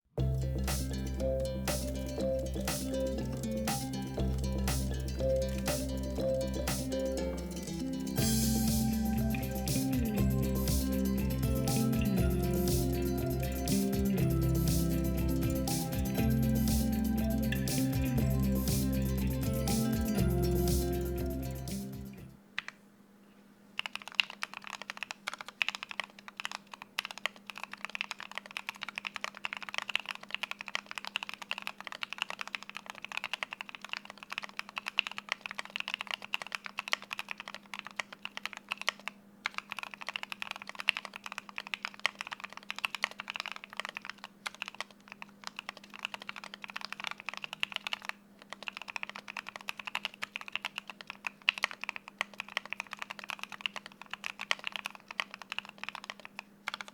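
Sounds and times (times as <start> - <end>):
fast typing on mechanical keyboard: 23.8 - 56.9.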